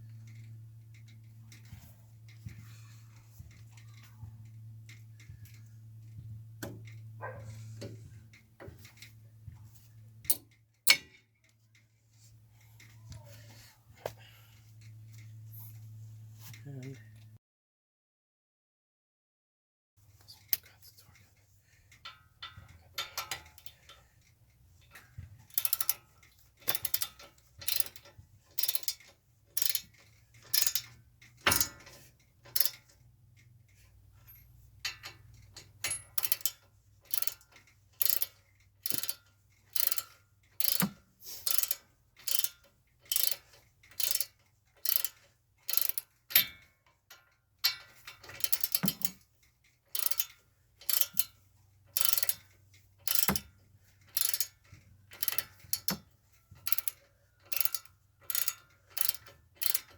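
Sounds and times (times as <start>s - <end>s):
ratchet wrench pawl clicking: 0.0s - 2.6s, 21.9s - 46.7s, 47.6s - 49.3s, 49.9s - 59.9s.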